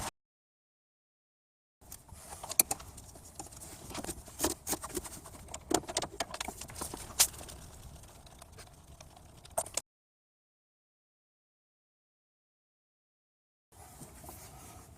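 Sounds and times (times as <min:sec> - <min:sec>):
tools and metal parts clicking: 0:01.9 - 0:09.8.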